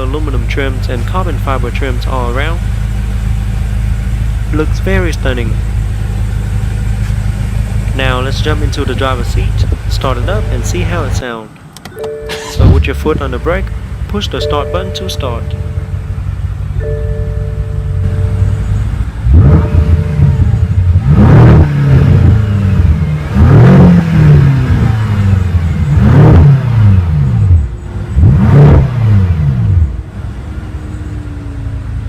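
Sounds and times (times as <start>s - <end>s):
car engine revving: 0.0s - 11.3s, 12.3s - 32.0s
car engine idling: 0.0s - 32.0s.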